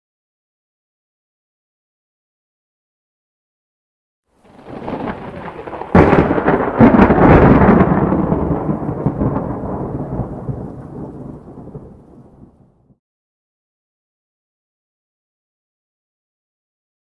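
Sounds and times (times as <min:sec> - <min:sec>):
rolling thunder rumble: 0:04.4 - 0:13.0
thunder crack: 0:04.4 - 0:13.0.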